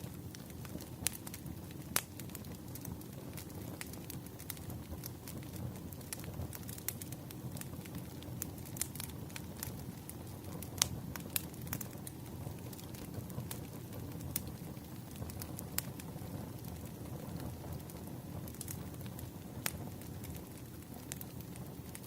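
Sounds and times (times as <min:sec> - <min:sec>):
firewood crackling and popping: 0:00.0 - 0:22.0.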